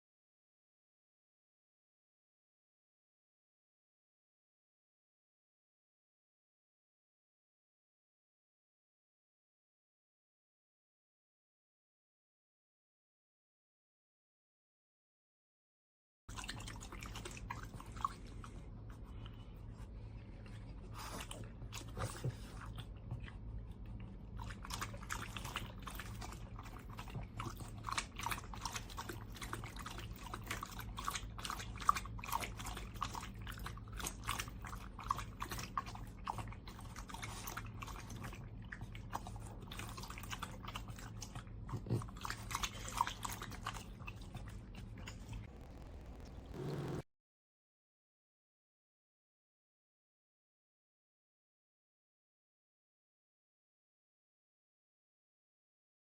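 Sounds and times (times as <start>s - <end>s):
cat lapping water: 16.3s - 18.7s, 21.8s - 44.4s.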